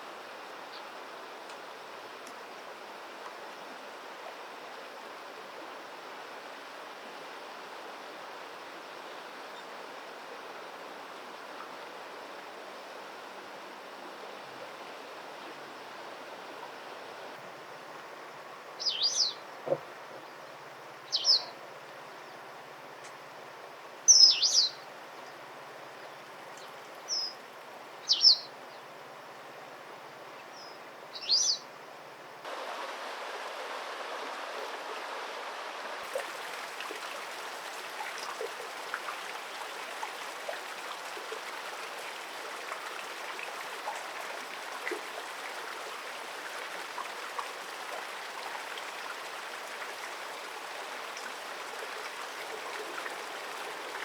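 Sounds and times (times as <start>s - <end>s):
flowing water rushing: 32.4s - 54.0s.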